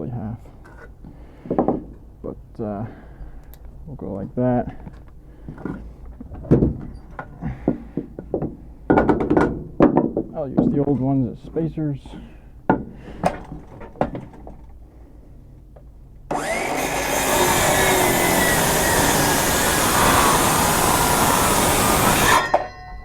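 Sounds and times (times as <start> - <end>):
cordless power saw cutting wood: 16.3 - 22.6.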